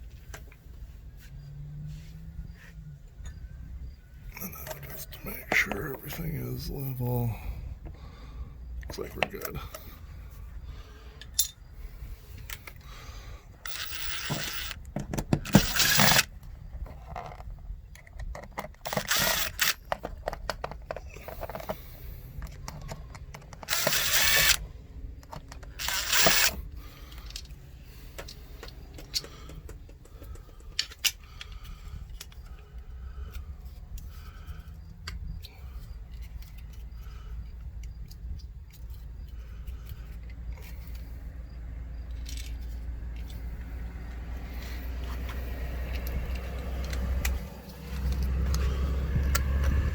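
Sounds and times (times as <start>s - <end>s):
low background rumble: 0.0s - 18.2s
rapid clicking: 13.6s - 14.8s, 18.8s - 20.3s, 25.2s - 26.6s
tool rasping bursts: 13.6s - 16.3s, 18.8s - 19.9s, 23.6s - 24.6s, 25.7s - 26.6s.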